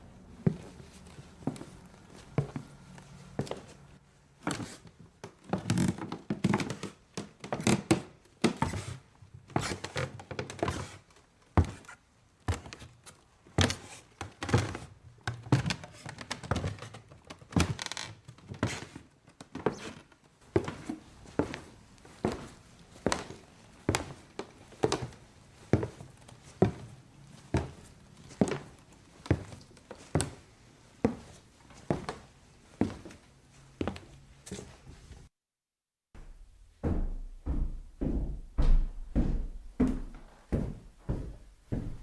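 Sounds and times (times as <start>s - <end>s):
footsteps on wooden floor: 0.4s - 3.8s, 19.6s - 30.4s, 31.0s - 33.2s, 33.8s - 35.0s, 36.2s - 42.0s.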